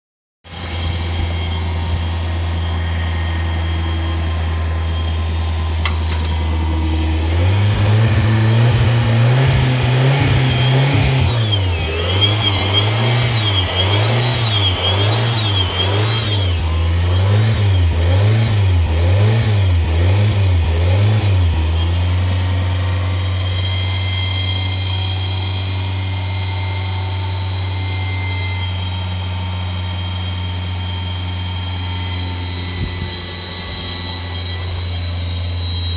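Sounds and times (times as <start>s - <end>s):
truck engine idling and revving: 0.5s - 35.9s.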